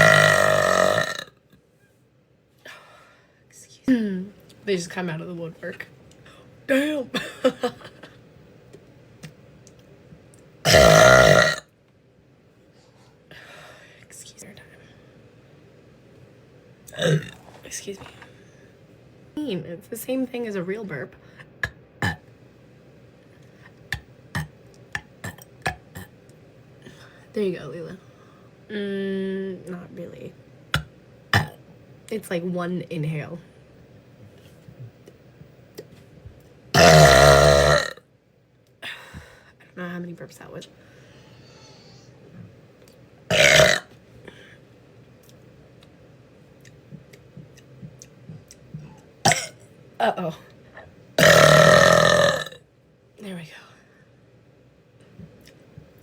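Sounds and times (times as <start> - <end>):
woman burping: 0.0 - 1.3, 6.7 - 8.0, 10.7 - 11.6, 16.9 - 17.4, 36.8 - 38.0, 43.3 - 43.9, 49.3 - 50.4, 51.2 - 52.6.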